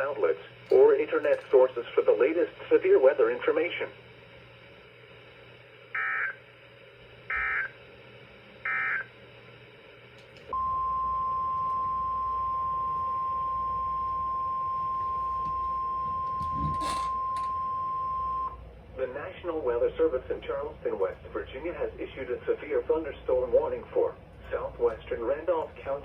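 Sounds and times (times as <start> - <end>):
steady warning alarm tone: 5.9 - 6.4, 7.3 - 7.8, 8.6 - 9.1, 10.5 - 18.6.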